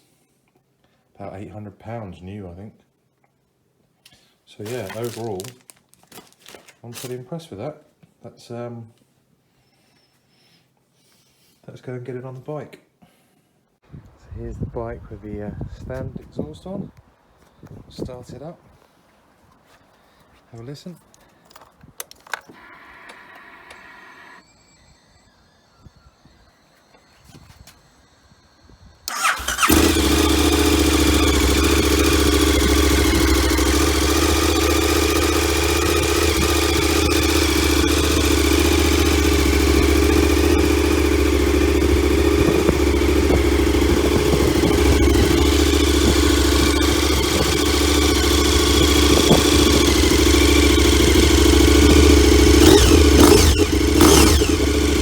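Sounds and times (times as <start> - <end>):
motorcycle engine starting and idling: 4.6 - 7.2, 21.5 - 55.0.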